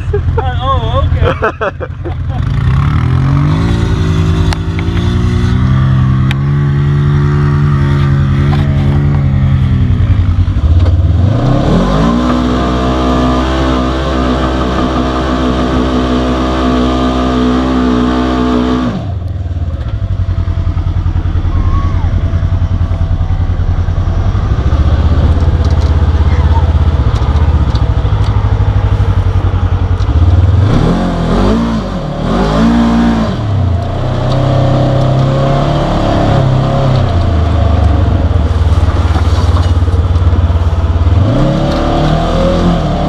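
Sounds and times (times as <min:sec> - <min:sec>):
engine revving: 0:00.8 - 0:43.0.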